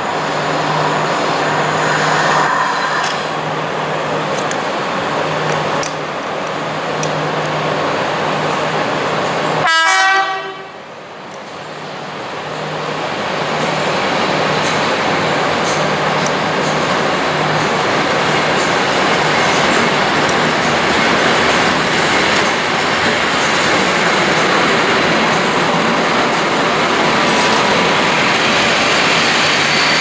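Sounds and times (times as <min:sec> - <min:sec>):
train rumbling on rails: 0:00.0 - 0:30.0
train horn blast: 0:09.6 - 0:10.8.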